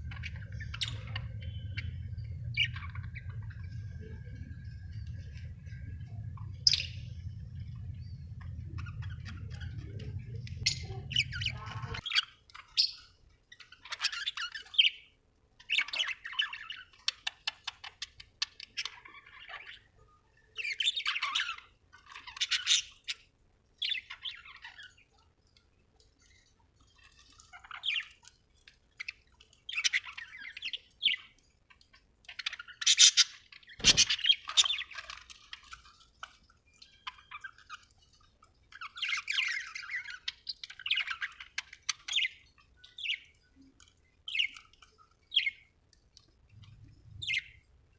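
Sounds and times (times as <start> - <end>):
budgerigars chirping and squawking: 0.0 - 4.0, 4.6 - 13.0, 20.6 - 23.2, 32.3 - 35.3, 38.8 - 43.3, 47.1 - 47.6
steady low hum: 0.0 - 12.0.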